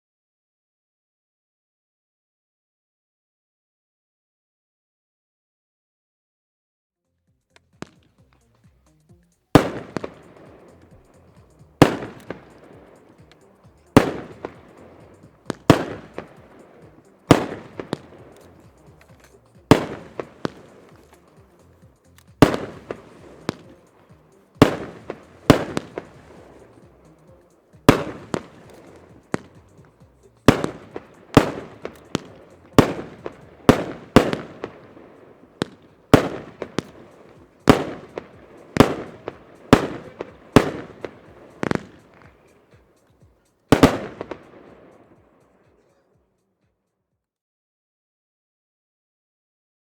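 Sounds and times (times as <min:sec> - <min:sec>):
firework shots banging: 0:07.7 - 0:43.1, 0:43.7 - 0:45.4.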